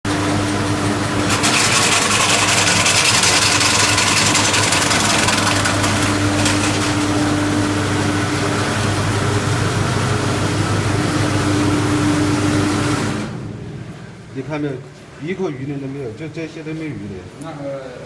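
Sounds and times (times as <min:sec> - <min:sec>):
machine motor hum: 0:00.1 - 0:14.5.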